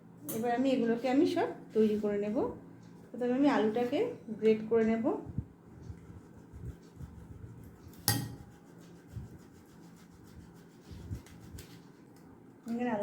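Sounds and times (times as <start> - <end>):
potato grated on grater: 5.9 - 12.0.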